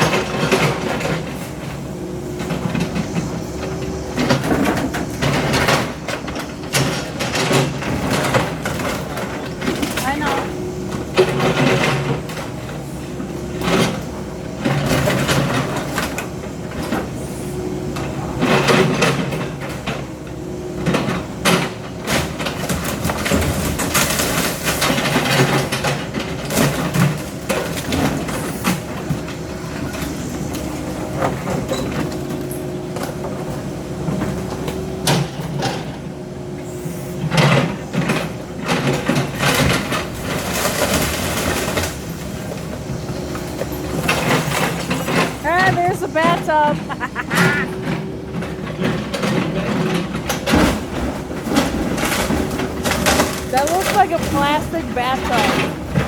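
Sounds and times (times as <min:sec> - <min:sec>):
demolition machinery engine hum: 0:00.0 - 0:56.0
debris crashing and clattering: 0:37.6 - 0:56.0.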